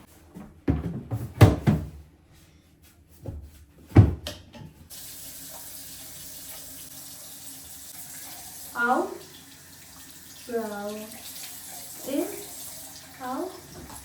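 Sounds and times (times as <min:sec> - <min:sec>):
water running into sink: 0:04.9 - 0:14.0.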